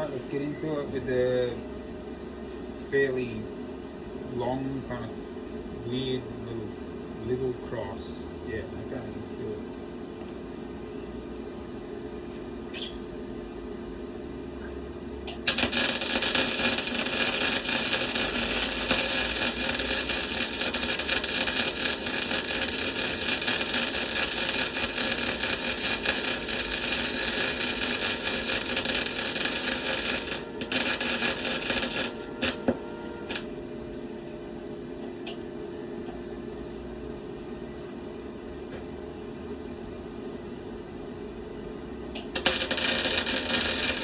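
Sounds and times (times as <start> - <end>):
low steady hum: 0.0 - 44.0
welding arc pops: 15.3 - 33.5, 42.2 - 44.0
welder crackling sizzle: 15.3 - 33.6, 42.2 - 44.0.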